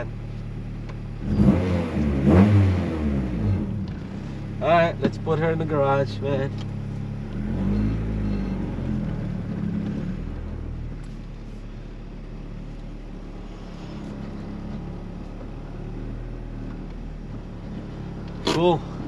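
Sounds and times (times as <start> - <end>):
car engine running: 0.0 - 19.0.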